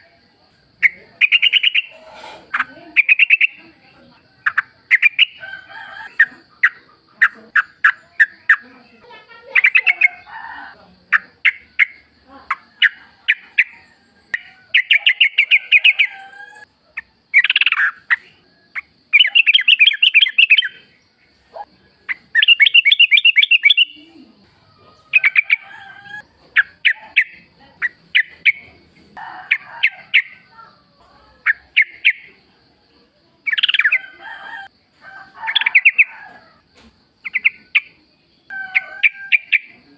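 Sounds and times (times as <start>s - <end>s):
bird chirping and warbling: 0.8s - 3.8s, 4.4s - 5.4s, 6.2s - 10.3s, 11.1s - 24.2s, 31.4s - 32.3s, 33.4s - 34.0s, 35.5s - 36.1s, 37.2s - 38.0s, 38.7s - 39.8s.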